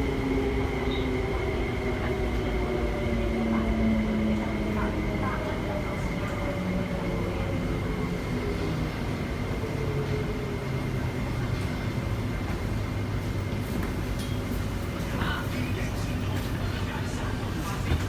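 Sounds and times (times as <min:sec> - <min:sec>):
wheels rumbling on rail: 0:00.0 - 0:18.0.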